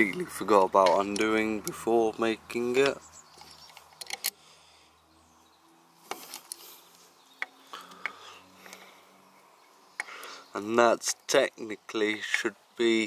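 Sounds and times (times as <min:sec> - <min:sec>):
hand tools clicking and tapping: 0:00.8 - 0:01.8, 0:02.7 - 0:04.4, 0:10.0 - 0:10.3, 0:12.0 - 0:12.5.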